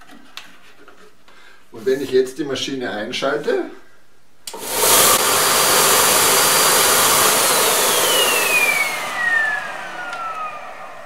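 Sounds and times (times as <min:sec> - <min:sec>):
belt sander running: 0:04.5 - 0:11.0
vacuum cleaner running: 0:04.5 - 0:11.0
motor winding down whine: 0:04.6 - 0:11.0.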